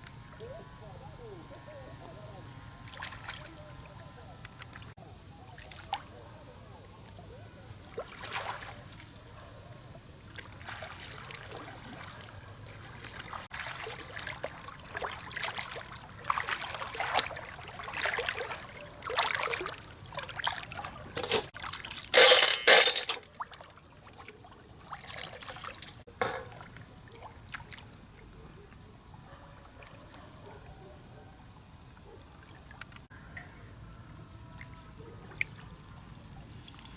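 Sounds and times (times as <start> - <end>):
water splashing and trickling: 2.8 - 6.2, 7.8 - 28.5, 34.5 - 36.9.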